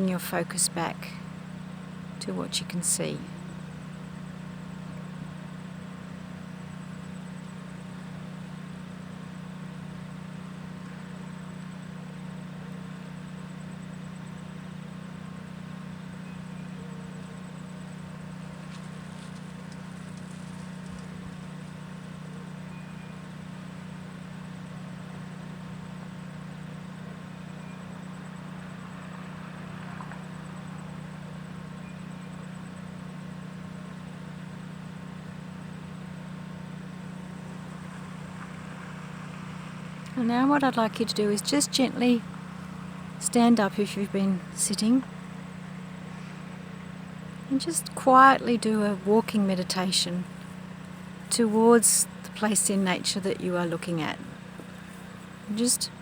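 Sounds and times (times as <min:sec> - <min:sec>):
steady low hum: 0:00.0 - 0:56.0
faint bird chirps: 0:15.9 - 0:21.6, 0:22.2 - 0:23.6.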